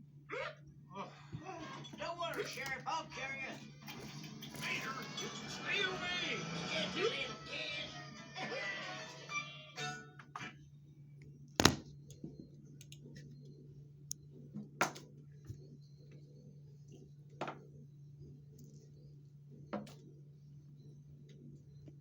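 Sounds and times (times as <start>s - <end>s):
steady low hum: 10.6s - 22.0s.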